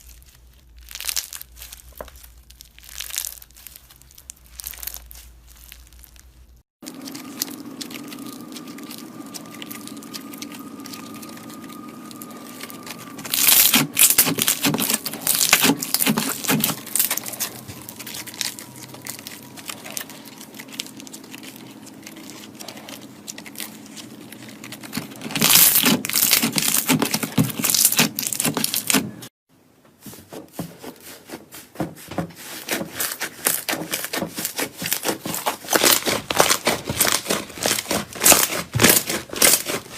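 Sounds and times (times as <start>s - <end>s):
slime squishing and popping: 0.0s - 29.2s.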